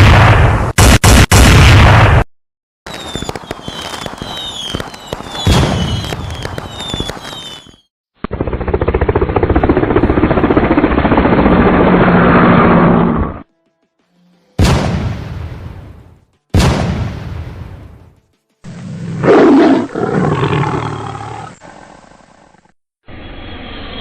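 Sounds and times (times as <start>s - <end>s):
rapid automatic fire crackling: 0.0s - 2.2s, 2.9s - 9.9s
sharp shots with falling whistles: 2.9s - 7.9s.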